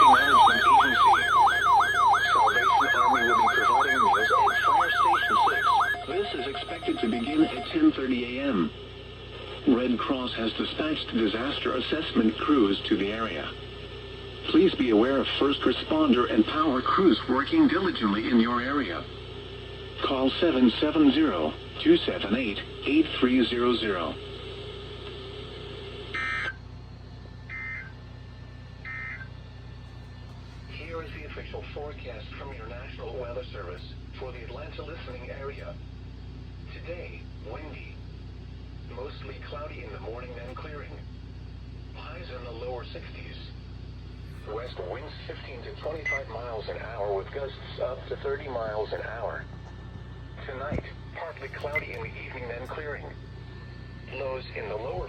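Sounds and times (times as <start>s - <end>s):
electronic siren alert tone: 0.0s - 8.0s, 27.5s - 27.9s, 28.8s - 29.3s.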